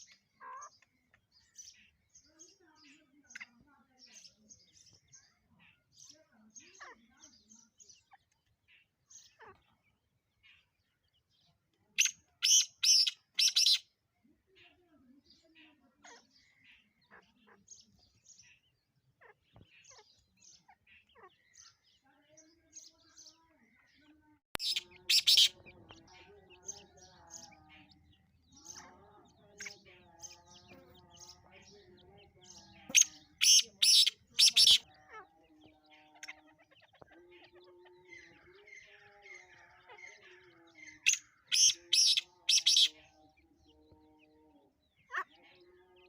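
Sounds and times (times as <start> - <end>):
bird harsh rasping calls: 12.0 - 14.0, 24.6 - 43.1.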